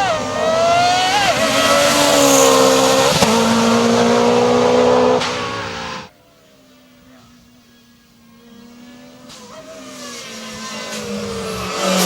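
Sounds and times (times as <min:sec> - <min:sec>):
rally car engine running hard: 0:00.0 - 0:06.1
sharp engine crack: 0:00.8 - 0:06.1.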